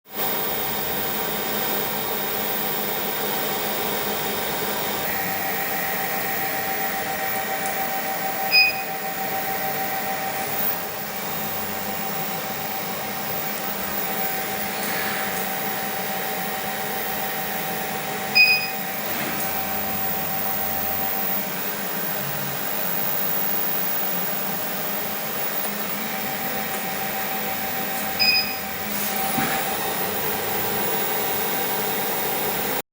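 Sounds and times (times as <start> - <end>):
short high electronic beeps: 8.5 - 9.0, 18.4 - 18.8, 28.2 - 28.8.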